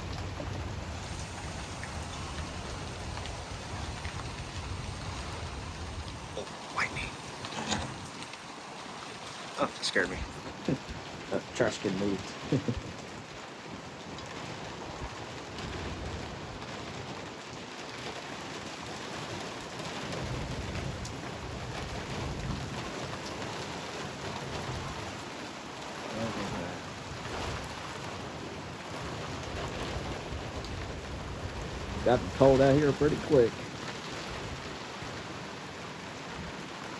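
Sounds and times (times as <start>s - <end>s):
thunder rumbling: 0.0s - 8.6s
heavy rain: 0.0s - 36.9s.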